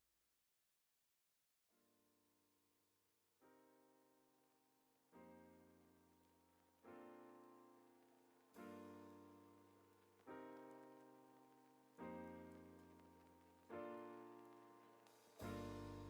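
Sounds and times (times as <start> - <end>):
piano chords ringing: 5.2 - 16.0.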